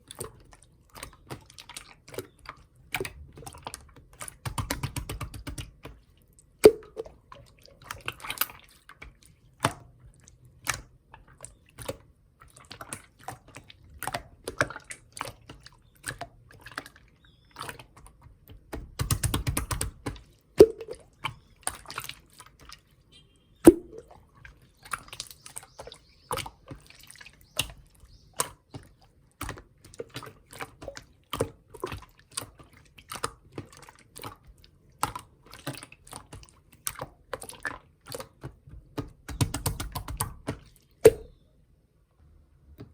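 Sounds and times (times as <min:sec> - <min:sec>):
slime squishing and popping: 0:39.0 - 0:41.4.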